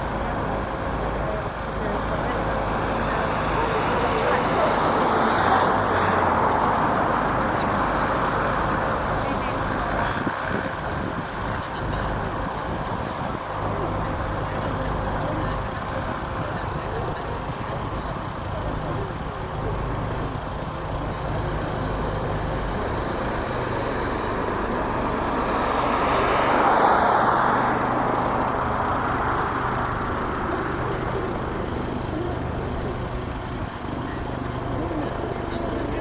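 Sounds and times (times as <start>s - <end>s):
helicopter rotor and turbine: 0.0s - 36.0s.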